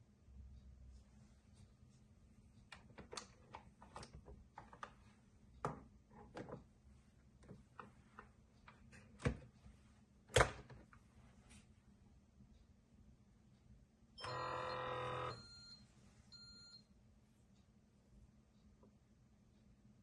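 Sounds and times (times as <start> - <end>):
faint low hum: 0.0 - 20.0
small clicks and knocks of handling: 2.6 - 6.7.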